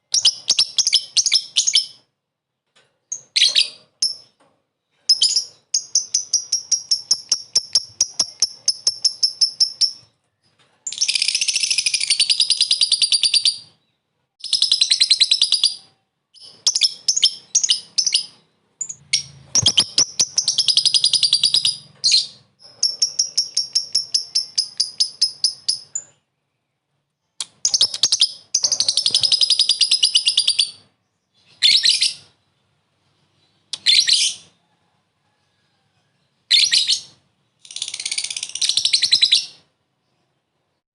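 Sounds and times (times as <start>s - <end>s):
lovebird rapid high chattering: 5.1s - 10.1s, 16.4s - 26.1s, 27.4s - 30.8s, 37.6s - 39.5s.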